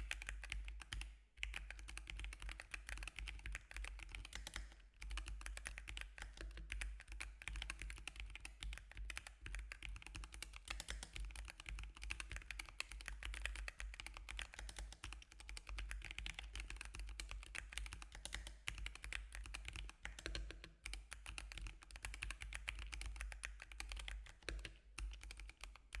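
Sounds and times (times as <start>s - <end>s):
typing on mechanical keyboard: 0.0s - 26.0s.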